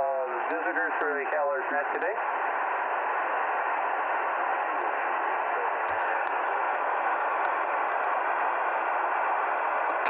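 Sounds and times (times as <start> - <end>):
faint static clicks: 4.5 - 5.1, 5.8 - 6.5, 7.2 - 8.4, 9.5 - 10.0.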